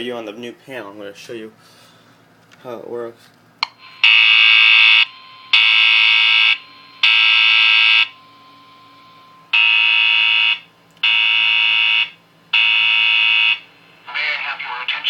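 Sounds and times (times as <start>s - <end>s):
fire alarm buzzy tones: 3.6s - 14.1s.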